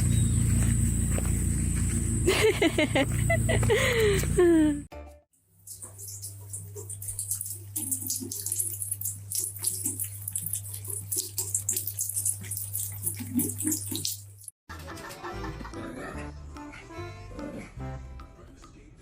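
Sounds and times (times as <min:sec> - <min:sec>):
steady low hum: 0:00.0 - 0:04.9
water splashing and running: 0:05.7 - 0:14.5.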